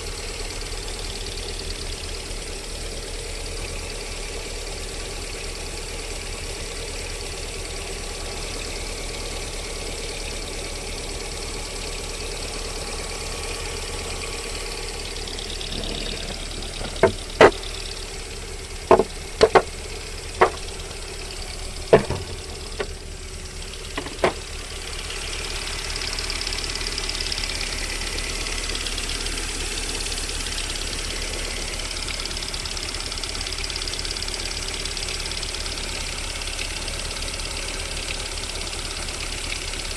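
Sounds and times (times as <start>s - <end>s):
car engine idling: 0.0s - 39.9s
sharp engine knocks: 15.2s - 25.4s.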